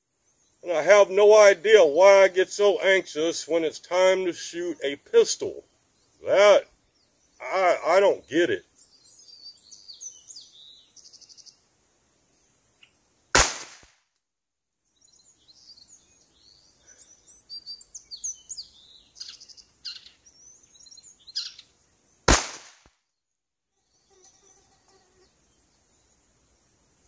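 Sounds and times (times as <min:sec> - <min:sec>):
birds chirping: 0:00.1 - 0:13.1, 0:14.9 - 0:22.5
pistol shots: 0:13.4 - 0:13.9, 0:22.3 - 0:22.9.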